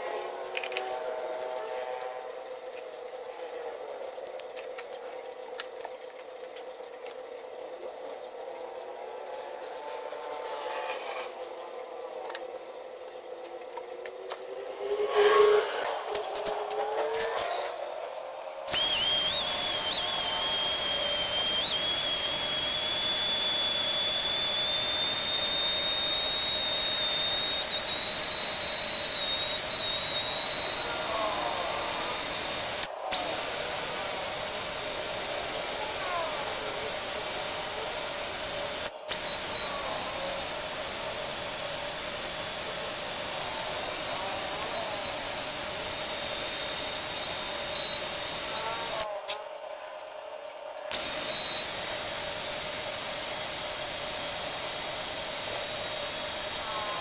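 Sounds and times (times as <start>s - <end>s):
power tool high-pitched whine: 18.7s - 49.1s, 50.9s - 57.0s.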